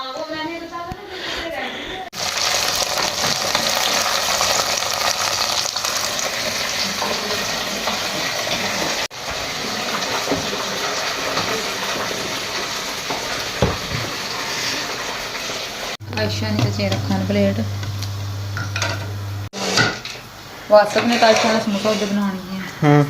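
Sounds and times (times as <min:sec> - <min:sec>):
running water hissing: 0:02.2 - 0:16.0.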